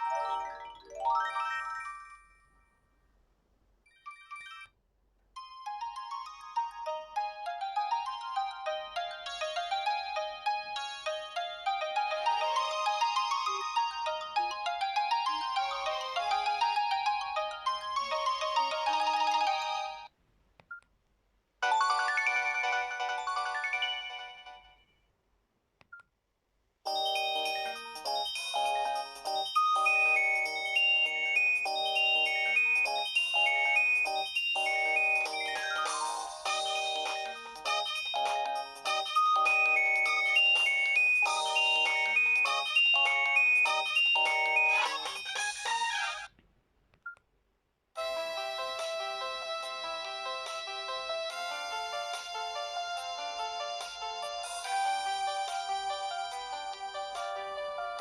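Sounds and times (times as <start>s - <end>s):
mobile phone ringtone: 5.4s - 20.1s, 21.6s - 24.8s, 26.9s - 45.5s.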